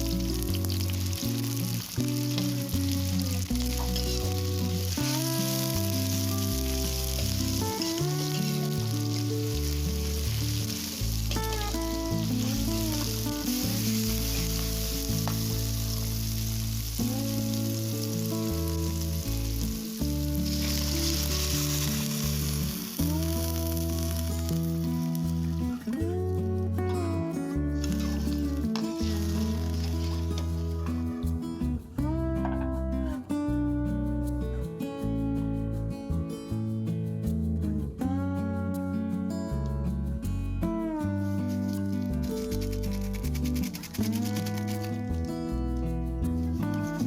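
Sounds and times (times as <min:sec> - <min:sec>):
food sizzling in hot oil: 0:00.0 - 0:26.0, 0:27.7 - 0:30.9
background music with bass line: 0:00.0 - 0:47.0.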